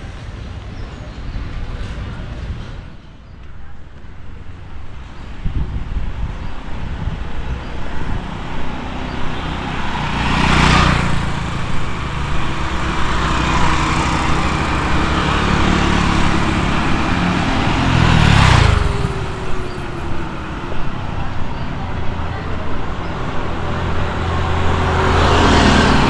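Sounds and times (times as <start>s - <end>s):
road traffic: 0.0s - 26.0s
vehicle passing close: 6.6s - 26.0s.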